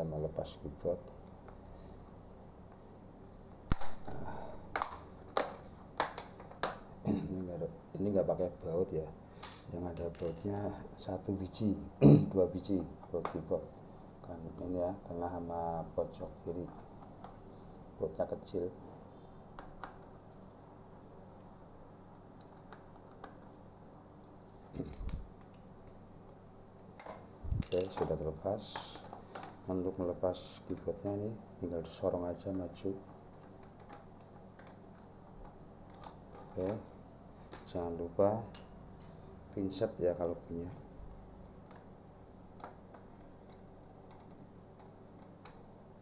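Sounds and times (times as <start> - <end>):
plastic trim snapping: 3.7 - 4.1.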